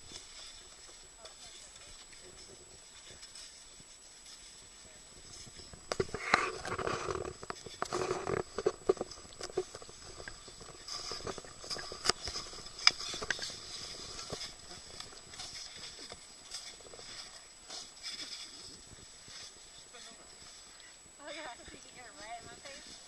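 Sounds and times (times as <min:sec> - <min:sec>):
snow crunching and scraping: 0:00.0 - 0:23.0.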